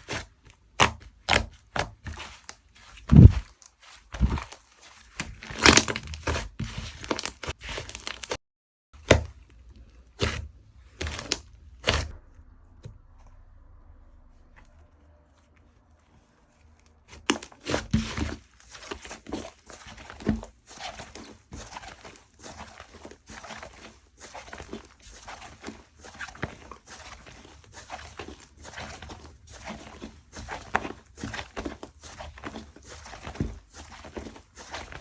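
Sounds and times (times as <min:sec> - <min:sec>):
slime squished by hand: 0:00.0 - 0:08.4, 0:10.0 - 0:13.4.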